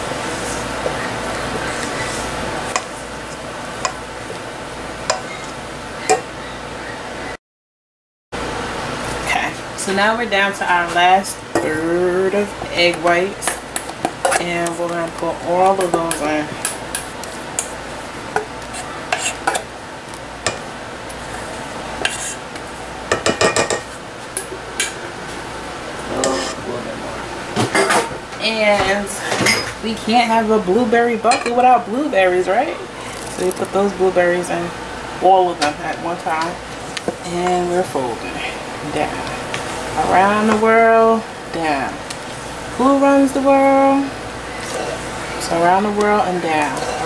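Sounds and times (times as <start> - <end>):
utensil scraping in mixing bowl: 0.2 - 3.5, 18.6 - 19.6, 21.2 - 22.4, 46.5 - 47.0.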